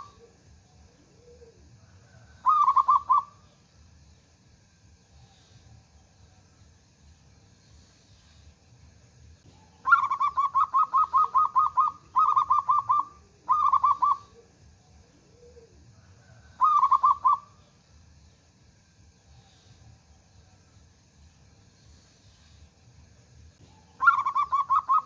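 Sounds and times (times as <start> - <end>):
dove cooing: 0.0 - 3.4, 9.5 - 17.6, 23.6 - 25.0.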